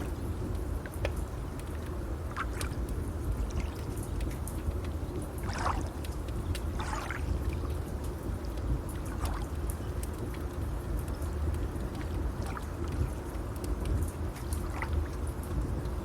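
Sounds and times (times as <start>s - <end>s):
faint fire crackles: 0.0s - 16.0s
water washing: 1.6s - 8.1s.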